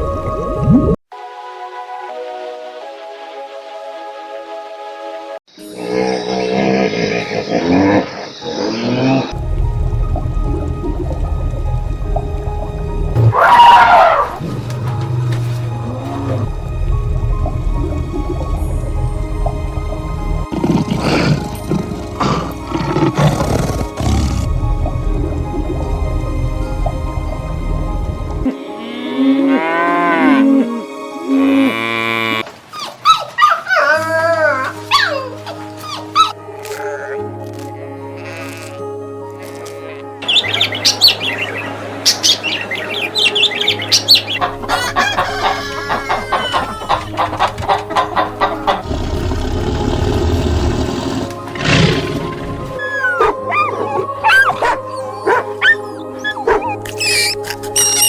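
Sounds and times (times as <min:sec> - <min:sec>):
soft background music: 0:00.0 - 0:32.4, 0:33.0 - 0:58.0
animal calls: 0:13.2 - 0:14.7, 0:32.7 - 0:38.8, 0:39.4 - 0:58.0
cow mooing: 0:28.5 - 0:32.5, 0:44.3 - 0:52.8.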